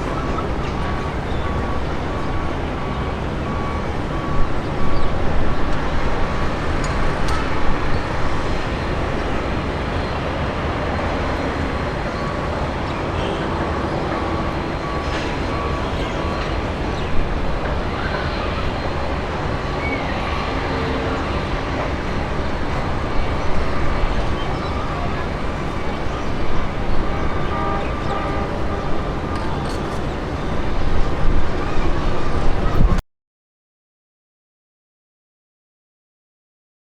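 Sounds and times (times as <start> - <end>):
engine and traffic rumble: 0.0 - 33.0.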